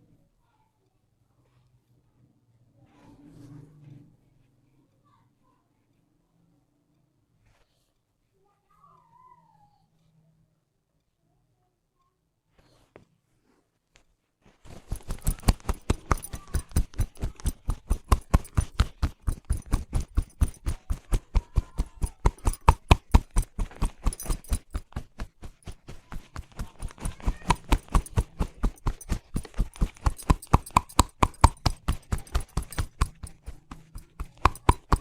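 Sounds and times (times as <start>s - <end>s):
hands slapping head: 14.7s - 35.0s.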